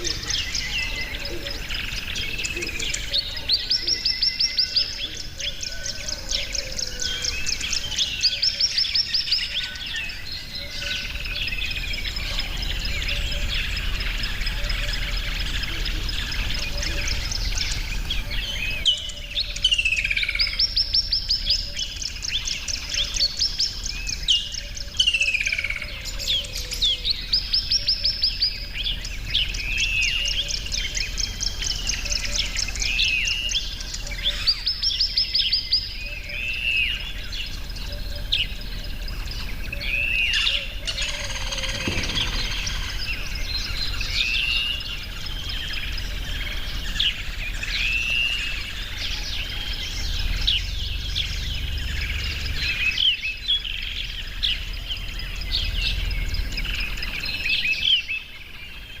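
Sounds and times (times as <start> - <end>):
bird chirping: 0.0 - 59.0
low outdoor rumble: 0.0 - 59.0
rattling bird trills: 40.4 - 47.6.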